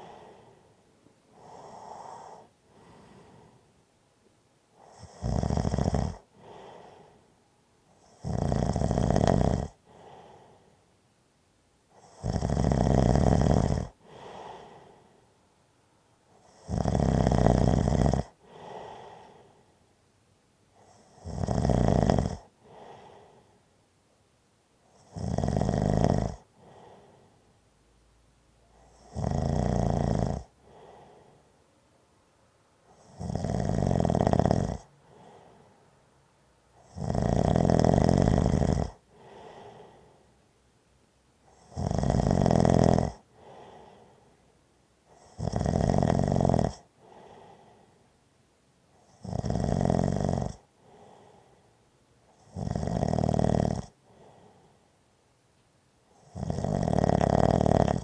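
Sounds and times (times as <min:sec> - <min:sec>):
person snoring: 0:01.4 - 0:03.6, 0:04.8 - 0:07.1, 0:08.0 - 0:10.6, 0:12.0 - 0:15.0, 0:16.4 - 0:19.5, 0:20.9 - 0:23.4, 0:25.0 - 0:27.1, 0:28.8 - 0:31.4, 0:32.9 - 0:35.6, 0:36.8 - 0:40.1, 0:41.5 - 0:44.2, 0:45.1 - 0:47.8, 0:49.1 - 0:51.6, 0:52.4 - 0:54.7, 0:56.2 - 0:58.0.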